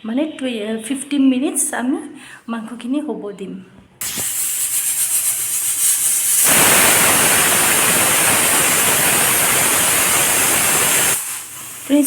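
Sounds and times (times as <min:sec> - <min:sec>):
pressure cooker whistling: 0:04.0 - 0:12.0.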